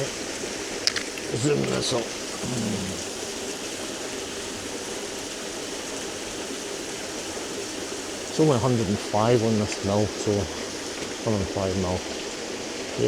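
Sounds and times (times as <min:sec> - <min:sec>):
waterfall and stream rushing: 0:00.0 - 0:13.0
man humming: 0:01.4 - 0:03.2.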